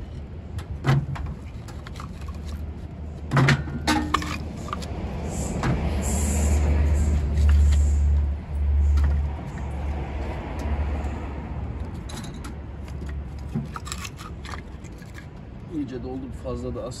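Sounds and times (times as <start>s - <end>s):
logs clunking against metal: 0.5s - 5.0s, 11.8s - 15.6s.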